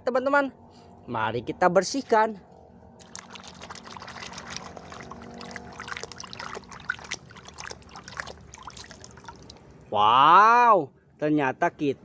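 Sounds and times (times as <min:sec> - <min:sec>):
small drips and clicks: 0:03.0 - 0:09.7
water pouring and trickling: 0:03.0 - 0:09.7.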